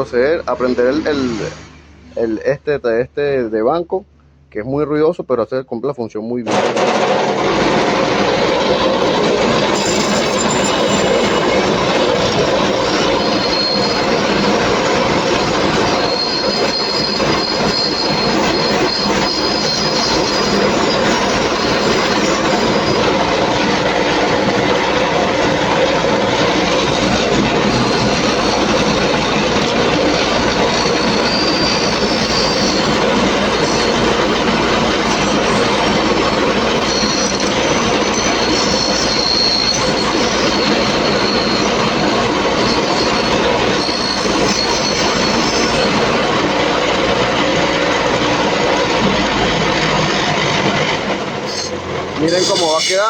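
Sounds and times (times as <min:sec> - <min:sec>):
high squeal: 0:00.0 - 0:02.6, 0:07.3 - 0:53.0
wire-brush wheel scrubbing metal: 0:07.3 - 0:48.4.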